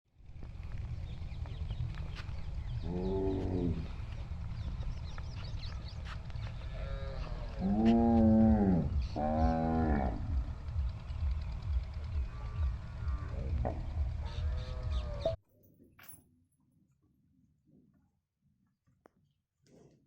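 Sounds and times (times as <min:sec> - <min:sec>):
low rumble: 0:00.2 - 0:15.4
cow mooing: 0:02.8 - 0:04.0, 0:06.6 - 0:10.6.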